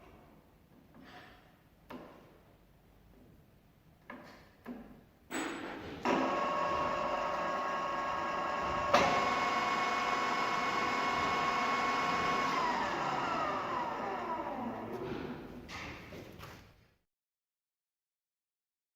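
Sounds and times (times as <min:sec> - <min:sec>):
drilling machine gear whine: 0:06.1 - 0:15.0.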